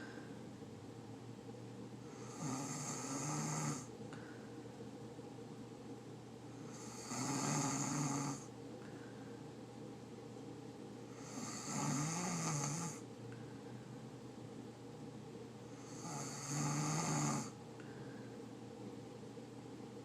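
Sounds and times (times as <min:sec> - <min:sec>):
person snoring loudly: 0:02.1 - 0:03.9, 0:06.7 - 0:08.5, 0:11.2 - 0:13.0, 0:15.8 - 0:17.6.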